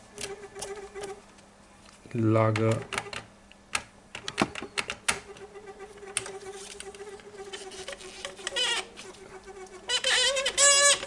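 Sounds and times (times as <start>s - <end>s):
tape mechanism clicks and taps: 2.5s - 5.4s
steady whine: 4.7s - 11.0s
bearing squeak: 9.9s - 11.0s.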